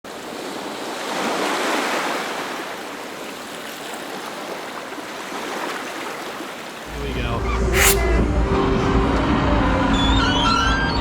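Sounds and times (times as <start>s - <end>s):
rushing water: 0.1s - 6.9s.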